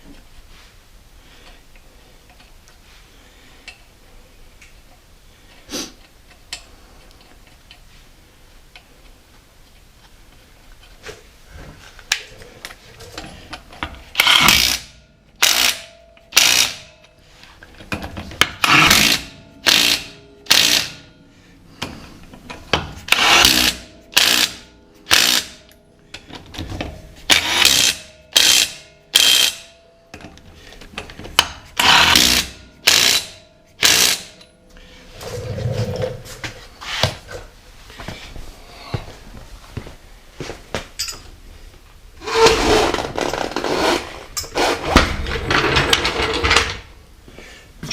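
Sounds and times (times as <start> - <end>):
impact wrench bursts: 14.1 - 17.0, 18.4 - 21.1, 23.0 - 25.7, 27.2 - 29.7, 31.4 - 34.4.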